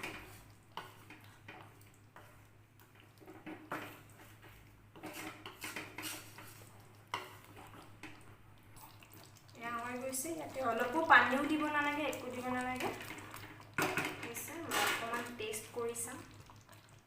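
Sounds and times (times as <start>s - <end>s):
spoon scraping a cooking pan: 0.0s - 8.3s, 10.6s - 15.6s.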